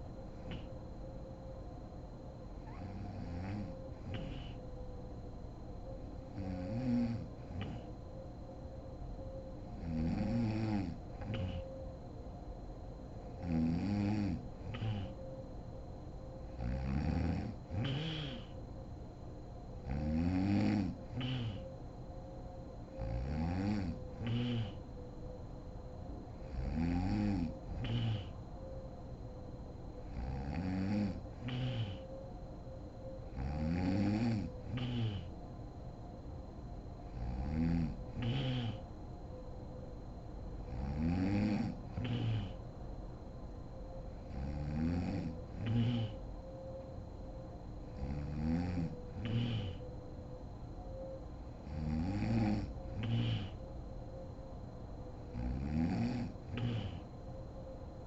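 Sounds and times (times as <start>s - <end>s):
woman snoring: 0.4s - 0.7s, 2.6s - 4.6s, 6.3s - 7.9s, 9.7s - 11.7s, 13.3s - 15.2s, 16.5s - 18.6s, 19.8s - 21.7s, 23.0s - 24.9s, 26.4s - 28.4s, 30.1s - 32.2s, 33.3s - 35.4s, 37.1s - 38.9s, 40.7s - 42.6s, 44.3s - 46.2s, 48.0s - 49.8s, 51.6s - 53.6s, 55.3s - 57.1s.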